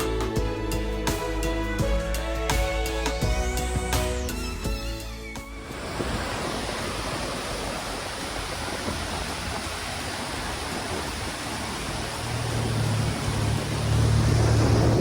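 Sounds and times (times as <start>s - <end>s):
deep rumble: 5.6s - 15.0s
waterfall roaring: 5.6s - 15.0s.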